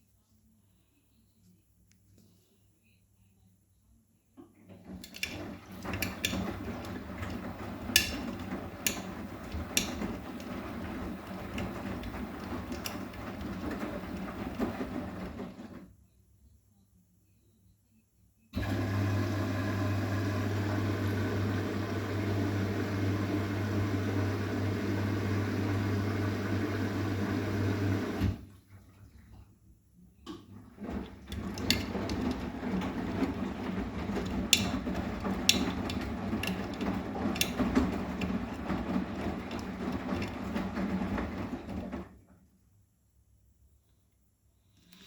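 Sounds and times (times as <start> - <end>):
washing machine humming: 4.6 - 15.9, 18.6 - 29.6, 30.3 - 42.4
drum turning with sloshing water: 4.8 - 15.7, 30.4 - 42.2.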